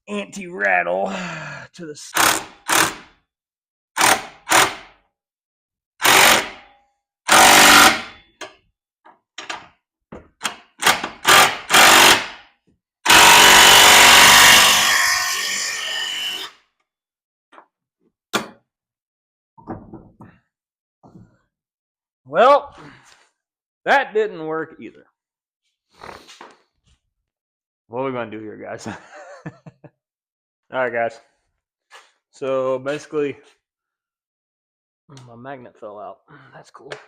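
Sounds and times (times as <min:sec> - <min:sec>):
power tool bursts: 0:02.2 - 0:03.1, 0:04.0 - 0:04.9, 0:06.0 - 0:06.6, 0:07.3 - 0:08.2, 0:10.8 - 0:12.4, 0:13.1 - 0:16.5.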